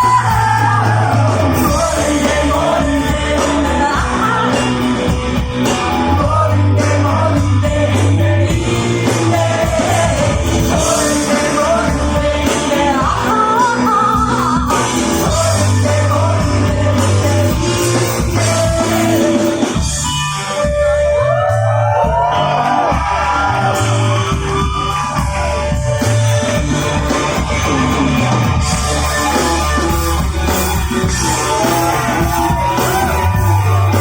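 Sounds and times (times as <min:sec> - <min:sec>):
person singing: 0:00.0 - 0:19.8
drums: 0:00.0 - 0:34.0
heavy bass line: 0:00.0 - 0:34.0
live rock band: 0:00.0 - 0:34.0.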